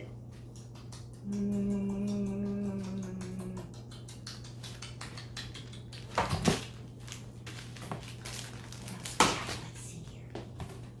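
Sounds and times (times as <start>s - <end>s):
steady low hum: 0.0s - 11.0s
crinkly packaging bursts: 6.1s - 9.8s
items rustling and clattering in package: 6.1s - 9.8s.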